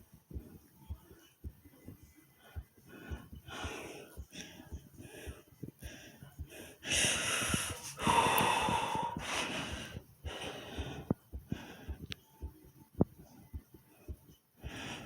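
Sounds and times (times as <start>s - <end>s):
person breathing hard: 2.4s - 12.5s, 14.0s - 15.0s.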